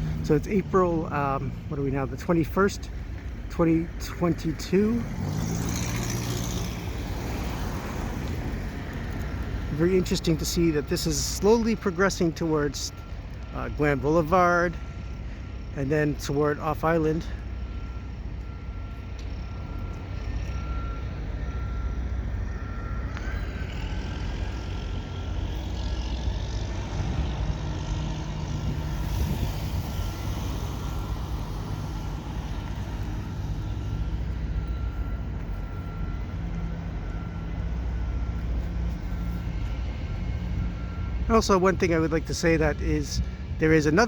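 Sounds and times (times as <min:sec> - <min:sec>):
reversing alarm beeping: 0:00.0 - 0:44.0
street traffic rumble: 0:00.0 - 0:44.0
vehicle passing: 0:04.8 - 0:11.0, 0:22.5 - 0:34.8.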